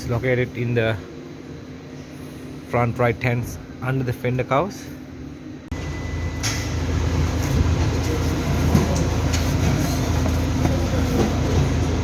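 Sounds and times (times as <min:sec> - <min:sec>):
machine running with deep rumble: 0:05.2 - 0:12.0.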